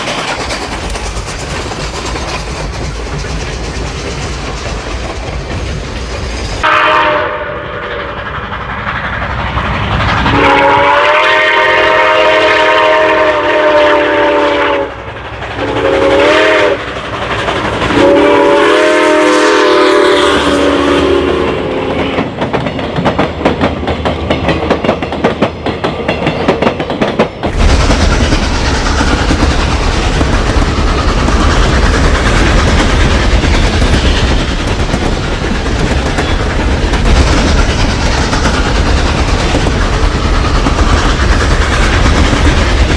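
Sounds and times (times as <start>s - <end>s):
low rumble of train: 0.0s - 42.9s
train clattering on rails: 0.0s - 42.9s
train horn blasts: 6.6s - 8.1s, 10.3s - 15.0s, 15.6s - 16.8s, 17.9s - 22.3s.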